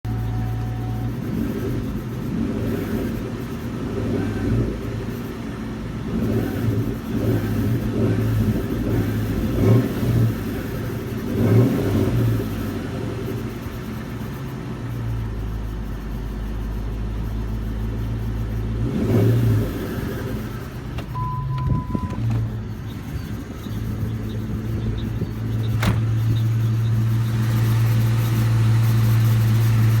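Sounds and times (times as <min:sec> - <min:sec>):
short steady tone: 0:00.0 - 0:01.2, 0:21.1 - 0:22.2
car engine running: 0:00.0 - 0:30.0.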